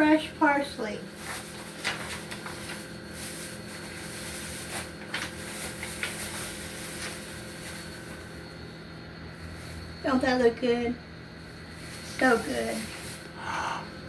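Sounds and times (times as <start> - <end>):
room hum: 0.0 - 14.0
soft clicks and rustles: 1.2 - 8.3.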